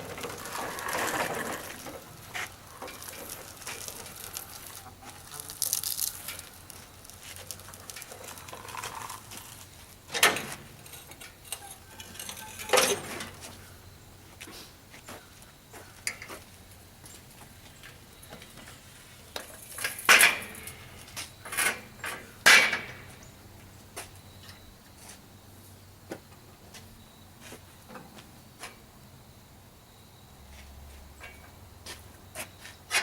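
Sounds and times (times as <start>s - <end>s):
metal tools clanking: 10.1s - 13.5s.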